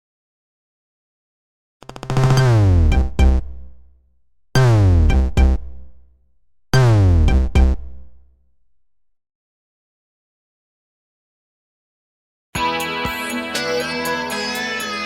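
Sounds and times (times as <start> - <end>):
synthesized ringtone: 2.2 - 3.4.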